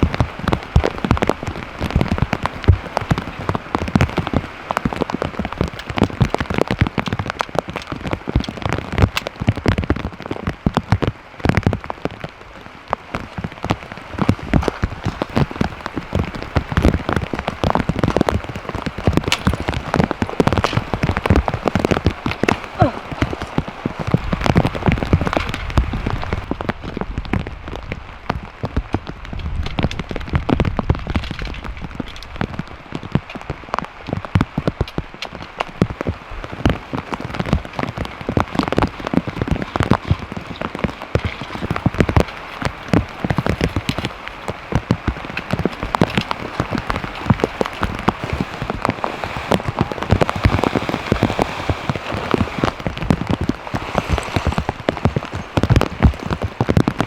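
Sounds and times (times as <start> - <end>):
rain falling: 0.0 - 57.0
raindrops ticking on a surface: 0.0 - 57.0.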